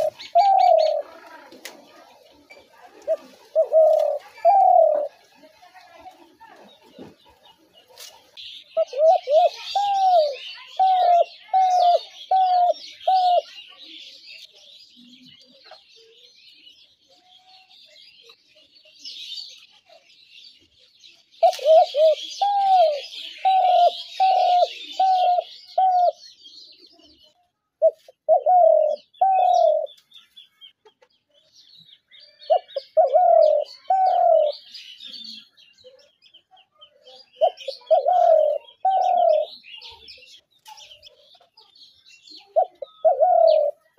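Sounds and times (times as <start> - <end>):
dove cooing: 0.0 - 5.3, 8.8 - 13.6, 21.4 - 26.2, 27.8 - 29.9, 32.5 - 34.7, 37.4 - 39.6, 42.4 - 43.9
small birds chirping: 0.0 - 43.9.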